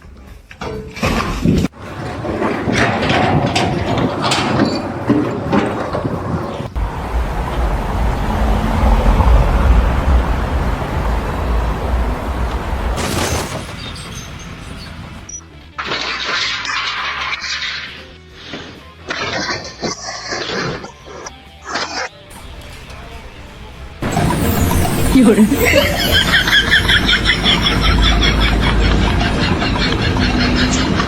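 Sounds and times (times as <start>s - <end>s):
mechanical clattering and knocks: 0.5s - 15.3s
steady deep mechanical rumble: 5.8s - 15.7s, 25.9s - 31.0s.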